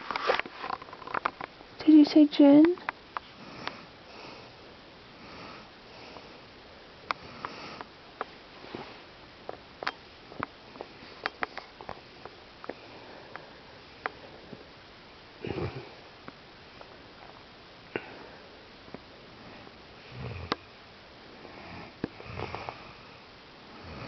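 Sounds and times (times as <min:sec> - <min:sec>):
man breathing softly in sleep: 0:03.3 - 0:04.6, 0:05.2 - 0:06.5, 0:07.1 - 0:07.9, 0:17.9 - 0:18.6.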